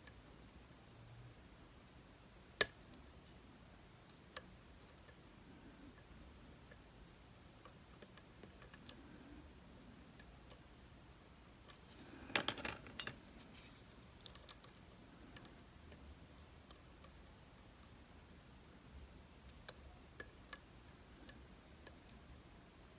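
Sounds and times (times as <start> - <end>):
metallic clicking and rattling: 11.7 - 14.4
lock-picking tools clicking: 11.8 - 14.6.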